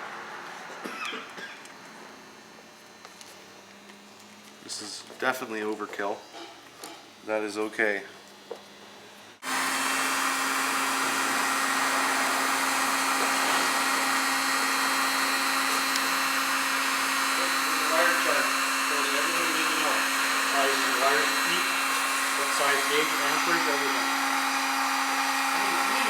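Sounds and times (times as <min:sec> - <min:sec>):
heat gun blowing hot air: 0:09.4 - 0:26.0.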